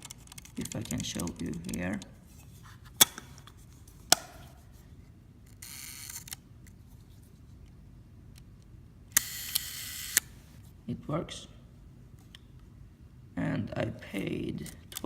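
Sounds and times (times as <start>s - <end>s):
camera shutter clicks: 9.2s - 10.4s.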